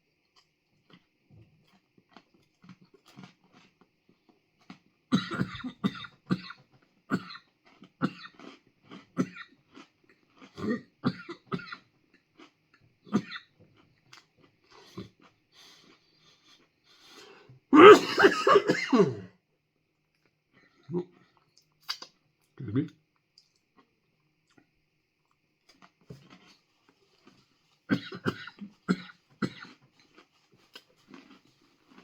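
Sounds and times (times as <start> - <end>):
man coughing: 17.8 - 19.3.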